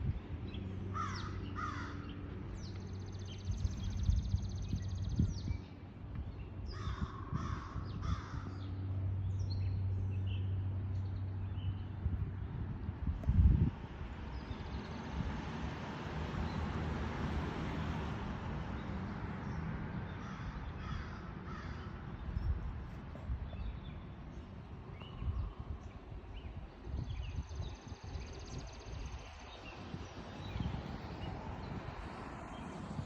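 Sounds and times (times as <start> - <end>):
crows cawing: 0.9 - 2.0, 6.8 - 8.6, 20.2 - 21.9.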